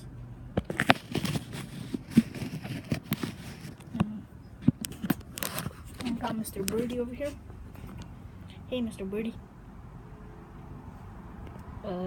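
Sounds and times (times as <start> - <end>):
camera handling noise: 0.6 - 4.0, 4.6 - 7.0.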